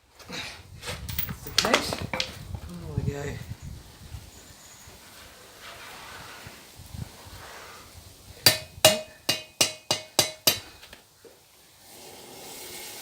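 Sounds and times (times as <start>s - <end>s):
hammer striking steel on anvil: 8.5s - 10.8s.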